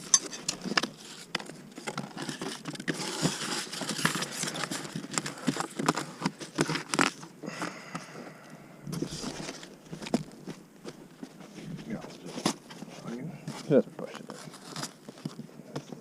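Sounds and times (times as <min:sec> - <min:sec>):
crinkling and rustling by hand: 0:00.0 - 0:16.0.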